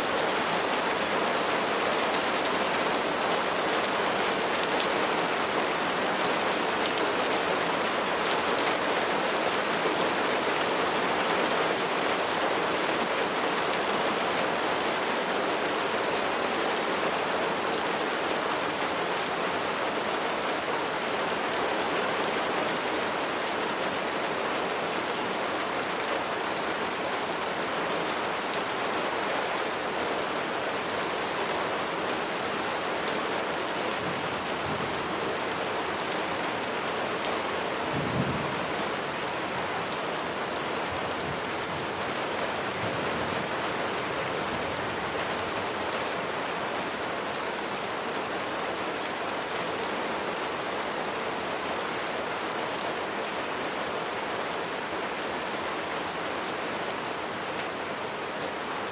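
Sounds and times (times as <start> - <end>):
steady rain hiss: 0.0 - 58.9.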